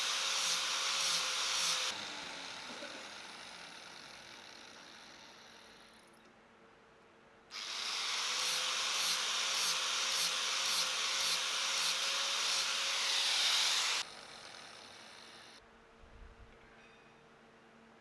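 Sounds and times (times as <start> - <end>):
power tool working metal: 0.0 - 6.0, 7.5 - 15.6.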